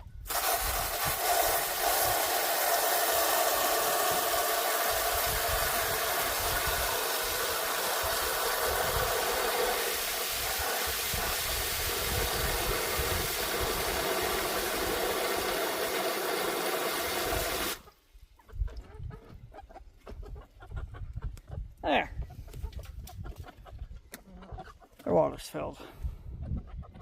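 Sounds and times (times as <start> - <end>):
water running into waterer: 0.2 - 17.9.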